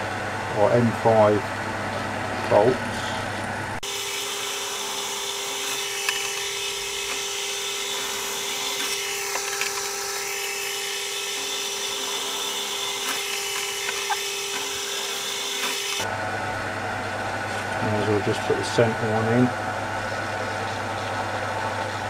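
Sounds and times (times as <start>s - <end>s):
power drill drilling metal: 3.8s - 16.1s.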